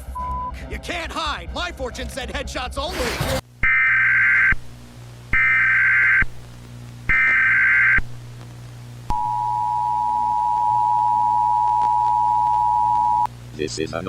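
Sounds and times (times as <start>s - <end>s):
buzzing warbling data bursts: 5.3s - 8.3s.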